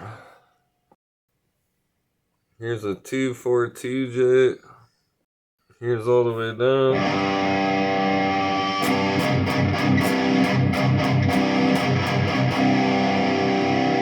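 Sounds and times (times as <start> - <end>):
electric guitar chords and picked notes: 6.9 - 14.0.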